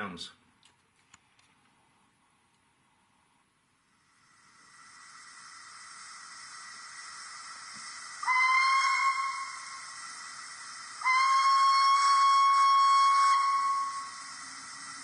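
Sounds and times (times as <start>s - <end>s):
faint hiss: 0.0s - 15.0s
model train steam whistle: 4.8s - 15.0s.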